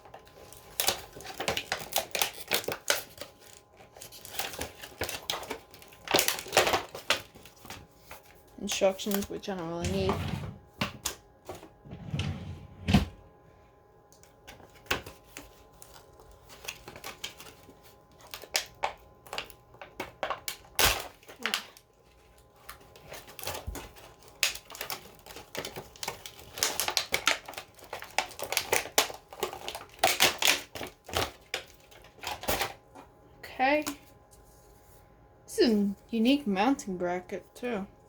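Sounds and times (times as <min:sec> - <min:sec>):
packaging crinkling: 0:00.0 - 0:09.8, 0:14.1 - 0:33.1.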